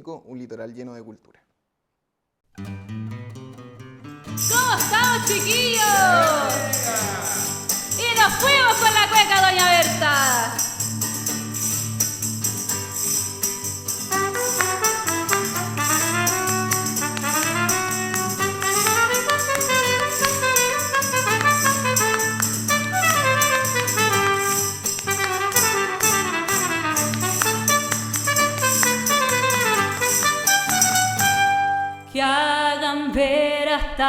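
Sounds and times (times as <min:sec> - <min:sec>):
brass melody: 0:04.4 - 0:10.7, 0:14.0 - 0:32.2.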